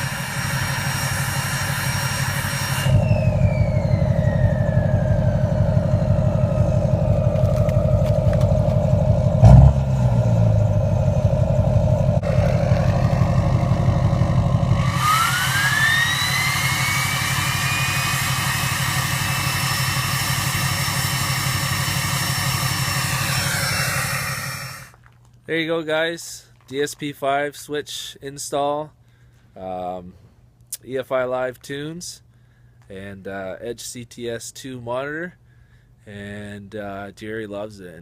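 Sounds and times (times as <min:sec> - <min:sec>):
turbo whistle rising in pitch: 0:00.0 - 0:08.4, 0:12.0 - 0:24.9
diesel engine running: 0:00.0 - 0:25.0
high whine: 0:00.0 - 0:25.0.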